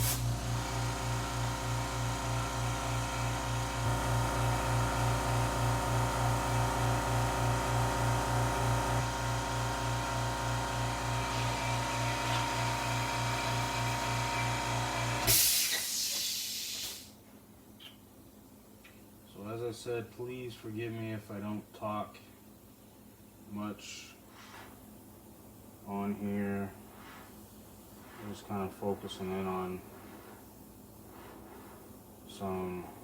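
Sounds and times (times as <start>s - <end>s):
air hissing: 0.0s - 0.4s, 15.2s - 17.2s
air compressor motor humming: 0.0s - 17.0s.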